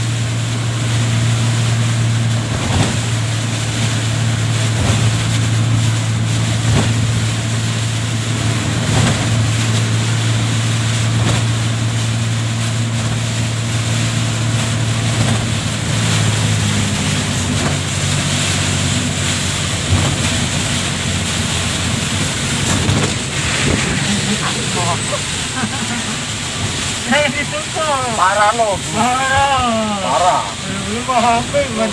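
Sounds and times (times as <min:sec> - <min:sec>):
heavy rain: 0:00.0 - 0:31.9
low engine hum: 0:00.0 - 0:31.9
strong wind: 0:18.9 - 0:27.1.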